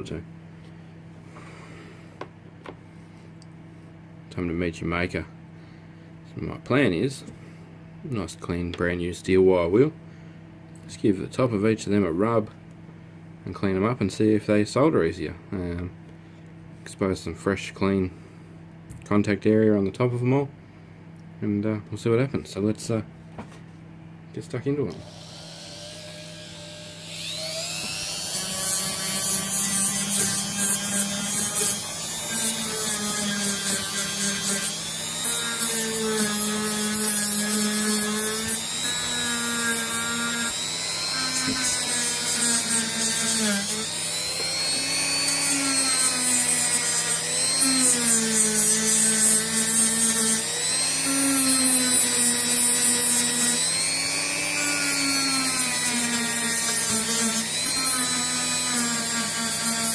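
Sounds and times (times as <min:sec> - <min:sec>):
rotary tool motor whine: 0:24.9 - 0:59.9.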